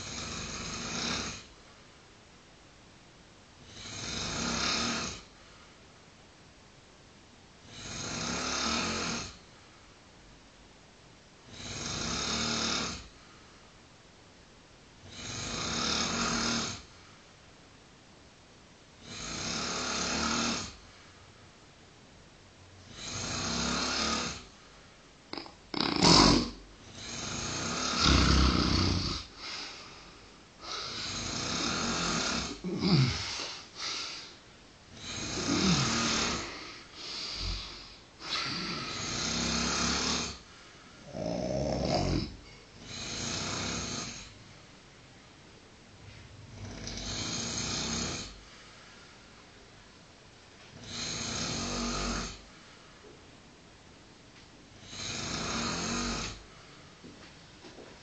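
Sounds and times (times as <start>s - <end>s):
man snoring: 0.0s - 1.5s, 3.6s - 5.3s, 7.7s - 9.4s, 11.5s - 13.1s, 15.0s - 16.9s, 19.0s - 20.8s, 22.9s - 24.5s, 25.3s - 30.0s, 30.6s - 40.4s, 41.0s - 44.4s, 46.5s - 48.4s, 50.8s - 52.5s, 54.8s - 56.4s.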